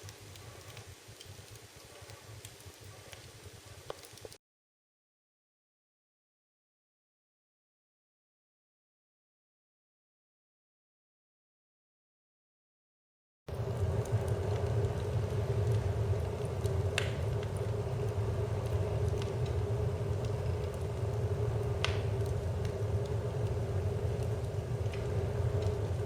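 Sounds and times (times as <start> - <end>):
wood fire crackling: 0.0 - 4.4, 13.5 - 26.0
low rumble: 13.5 - 26.0.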